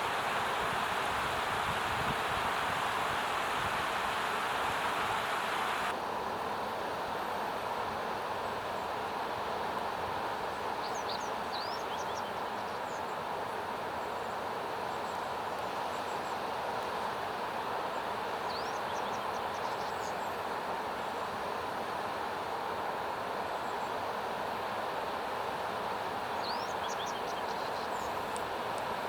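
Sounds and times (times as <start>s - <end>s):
loud steady rushing noise: 0.0s - 6.0s.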